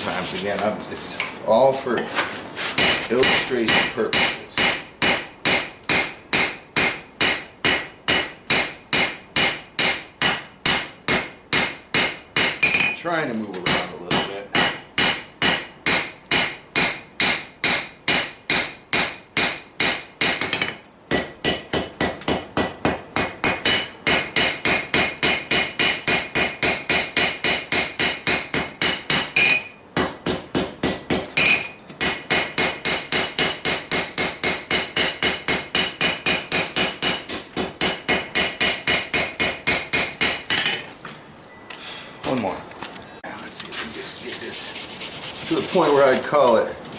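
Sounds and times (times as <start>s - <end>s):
hammer striking steel on anvil: 2.8s - 13.0s, 13.6s - 40.8s.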